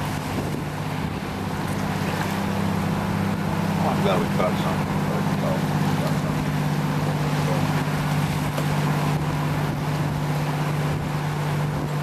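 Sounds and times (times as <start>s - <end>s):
wind noise: 0.0s - 1.4s
boat engine humming: 0.0s - 12.0s
water wash: 0.0s - 12.0s.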